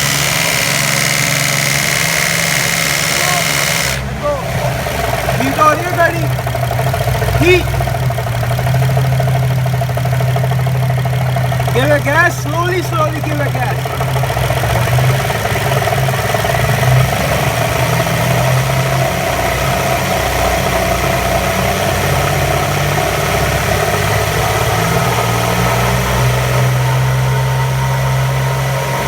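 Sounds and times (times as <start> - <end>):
car engine running: 0.0 - 29.0.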